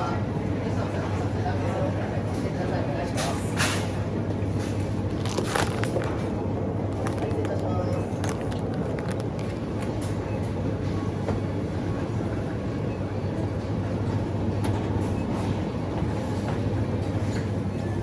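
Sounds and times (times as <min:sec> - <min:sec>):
constant hum: 0:00.0 - 0:18.0.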